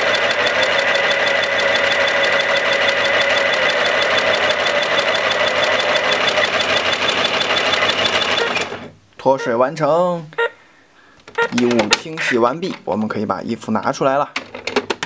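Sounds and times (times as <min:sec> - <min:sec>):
toy washing machine spinning: 0:00.0 - 0:08.9.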